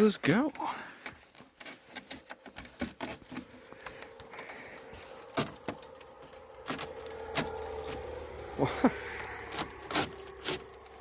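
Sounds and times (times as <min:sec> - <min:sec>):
metal and plastic clicks and knocks: 0:00.3 - 0:04.4.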